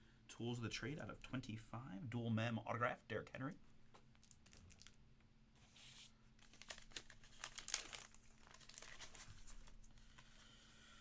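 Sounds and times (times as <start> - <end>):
plastic packaging crinkling: 4.2 - 5.0, 6.4 - 10.4.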